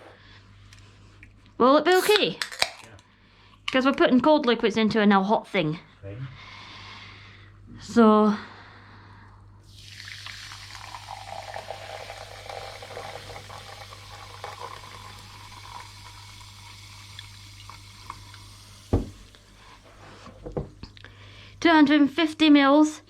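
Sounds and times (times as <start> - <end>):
soda fizzing: 1.9 - 2.6, 9.7 - 19.5
soda pouring into a jug: 9.7 - 19.4
knock: 18.9 - 19.2.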